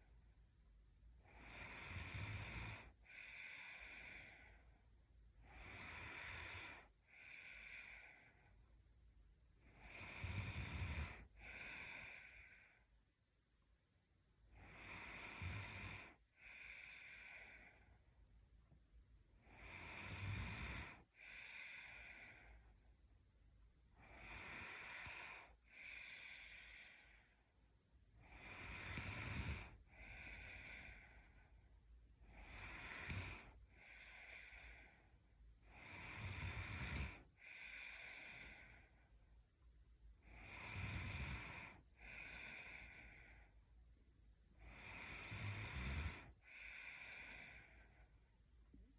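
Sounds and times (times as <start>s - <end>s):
woman snoring: 1.2s - 4.7s, 5.4s - 8.5s, 9.6s - 12.8s, 14.5s - 17.9s, 19.4s - 22.7s, 23.9s - 27.4s, 28.2s - 31.4s, 32.2s - 35.0s, 35.6s - 39.0s, 40.2s - 43.5s, 44.6s - 48.0s.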